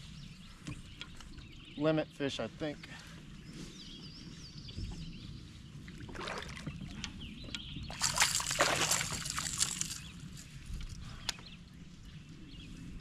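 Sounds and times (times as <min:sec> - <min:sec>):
water splashing and dripping: 0:07.9 - 0:10.0.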